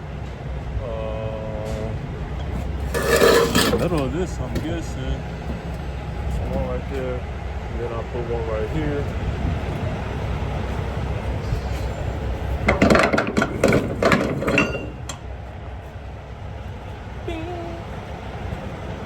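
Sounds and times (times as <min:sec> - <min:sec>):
steady low rumble: 0:04.0 - 0:14.0.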